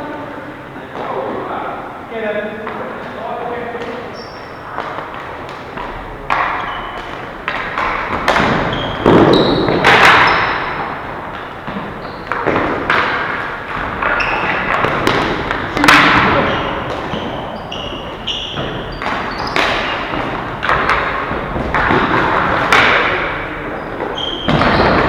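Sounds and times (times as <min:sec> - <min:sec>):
hockey sticks and ball knocking: 0:02.6 - 0:25.0.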